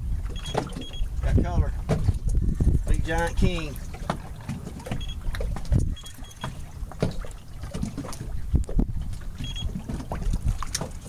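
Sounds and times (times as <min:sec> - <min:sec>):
boat engine rumble: 0:00.0 - 0:11.0
knocks and thumps: 0:01.8 - 0:02.8.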